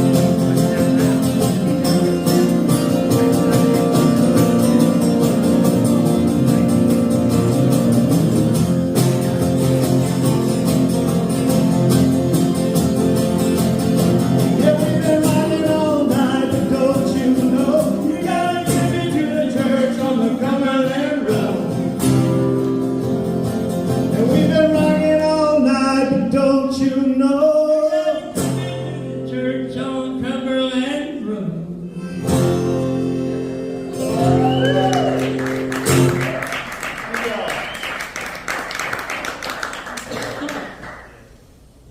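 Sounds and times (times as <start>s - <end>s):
acoustic guitar strumming: 0.0s - 36.9s
man singing: 14.3s - 22.0s, 24.0s - 32.4s.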